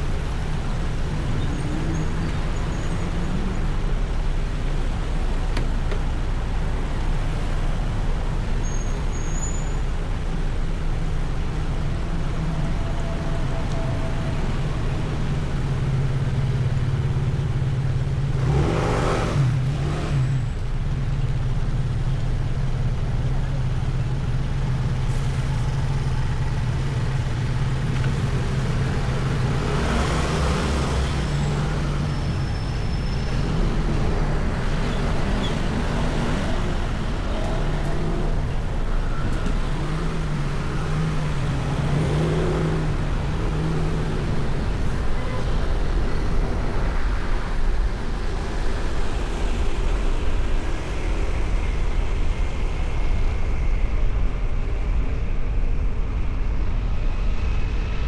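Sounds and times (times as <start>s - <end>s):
road and tyre noise: 0.0s - 58.0s
vehicle engine hum: 9.8s - 58.0s.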